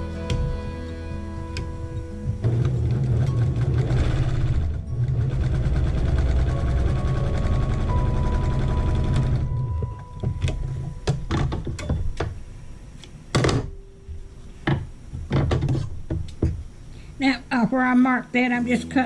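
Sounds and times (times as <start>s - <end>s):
electric sewing machine running: 2.4s - 9.7s
handling clicks and knocks: 9.8s - 12.4s.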